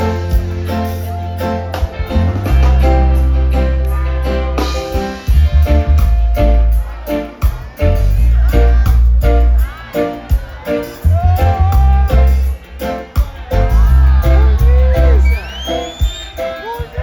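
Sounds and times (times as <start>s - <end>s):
heavy bass line: 0.0s - 17.0s
reggae band playing: 0.0s - 17.0s
person singing: 6.6s - 17.0s.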